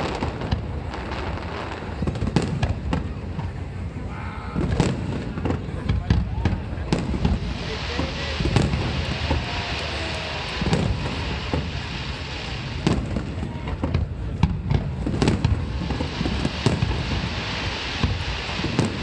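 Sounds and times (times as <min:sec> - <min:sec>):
loud firework bangs: 0:00.0 - 0:03.6, 0:04.5 - 0:19.0
fireworks booms: 0:00.0 - 0:19.0.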